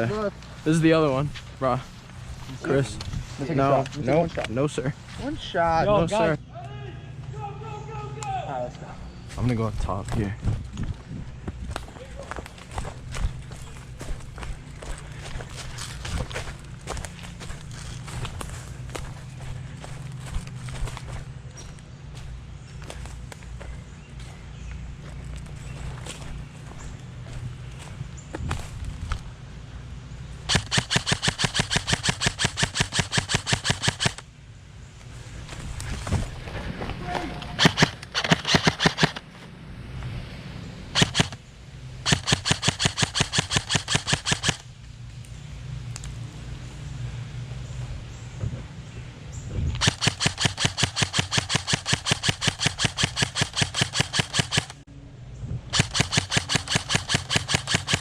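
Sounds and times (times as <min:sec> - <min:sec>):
airsoft rifle rapid shots: 0:30.5 - 0:34.2, 0:37.6 - 0:39.2, 0:41.0 - 0:41.4, 0:42.0 - 0:44.7, 0:49.8 - 0:54.8, 0:55.7 - 0:58.0.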